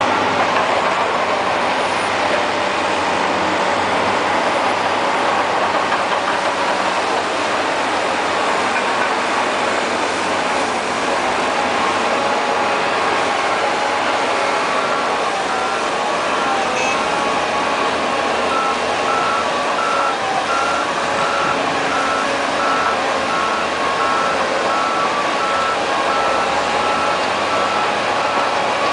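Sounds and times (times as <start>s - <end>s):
bulldozer running: 0.0s - 28.9s.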